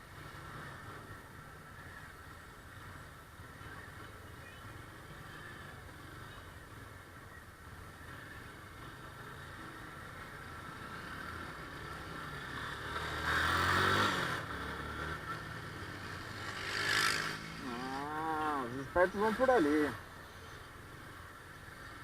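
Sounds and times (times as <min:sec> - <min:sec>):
motorcycle engine revving: 0:08.1 - 0:19.9.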